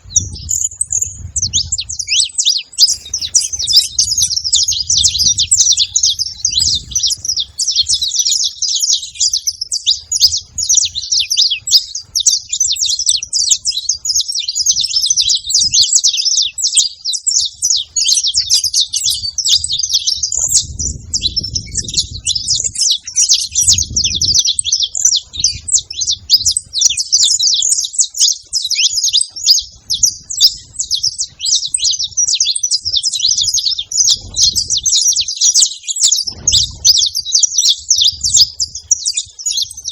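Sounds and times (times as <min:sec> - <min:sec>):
finches chirping: 0:00.0 - 0:39.9
low rumbles: 0:02.9 - 0:11.2.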